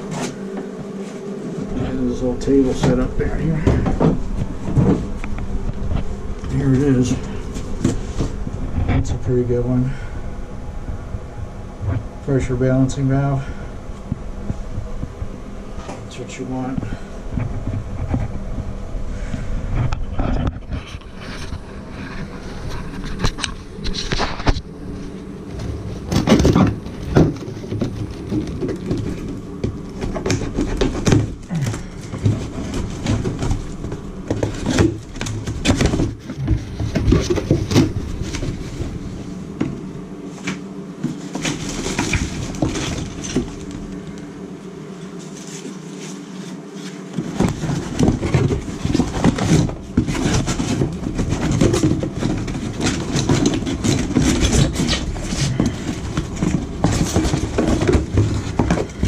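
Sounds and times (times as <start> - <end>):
knocks clicks and scraping of handling: 19.3 - 39.0, 45.3 - 59.0.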